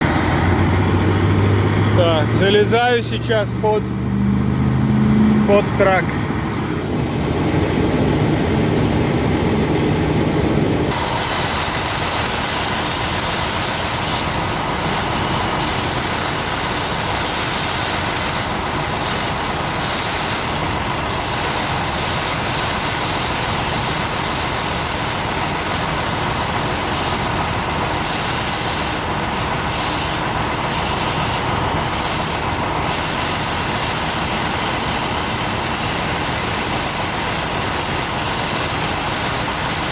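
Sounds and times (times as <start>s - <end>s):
compressed air hissing: 10.9s - 39.9s.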